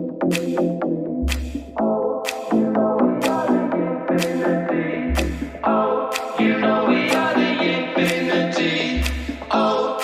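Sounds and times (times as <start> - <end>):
background music with steady beat: 0.0 - 10.0.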